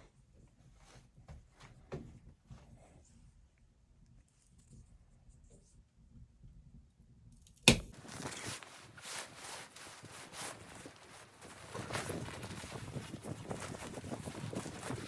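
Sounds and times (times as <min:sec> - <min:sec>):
sharp knock: 0:07.7 - 0:07.9
footsteps crunching through snow: 0:07.9 - 0:15.0.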